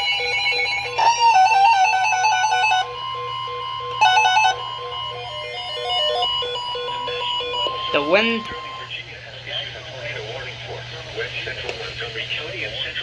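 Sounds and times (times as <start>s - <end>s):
beeping synth melody: 0.0s - 8.9s
steady high warning tone: 0.0s - 13.0s.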